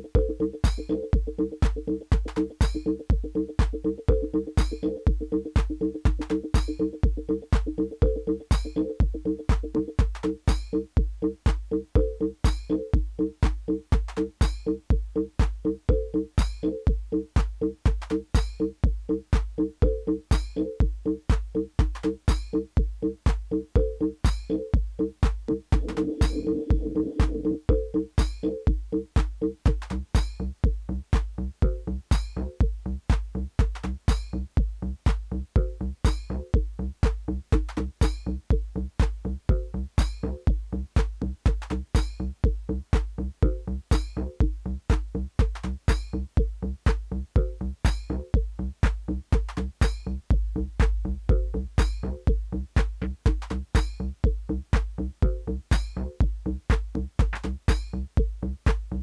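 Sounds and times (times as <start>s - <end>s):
repeating synthesizer pattern: 0.0s - 10.3s, 25.7s - 28.6s
drum machine kick: 0.0s - 59.0s.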